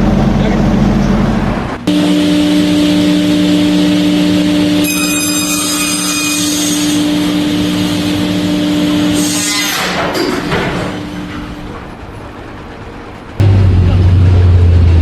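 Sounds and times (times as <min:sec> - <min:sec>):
high whine: 0:00.0 - 0:10.1
engine droning: 0:09.9 - 0:15.0.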